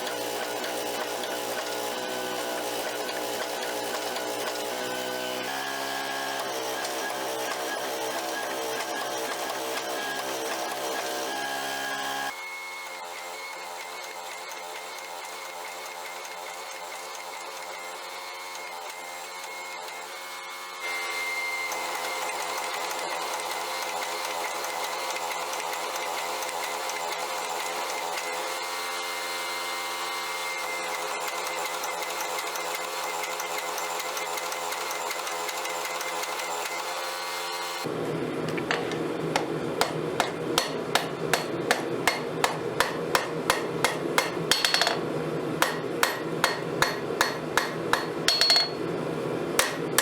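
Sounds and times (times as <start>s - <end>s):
electric motor whining: 0.0s - 16.4s.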